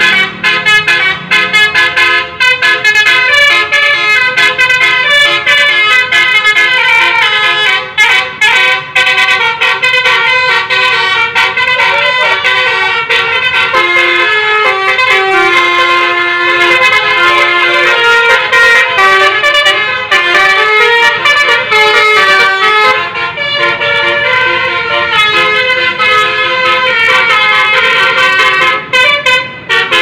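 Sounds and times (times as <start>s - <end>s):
musical bus horn melody: 0.0s - 30.0s.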